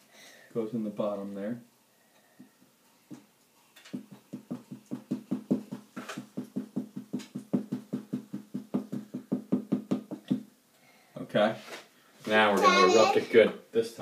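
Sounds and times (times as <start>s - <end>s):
rapid hollow knocking: 3.8s - 10.4s.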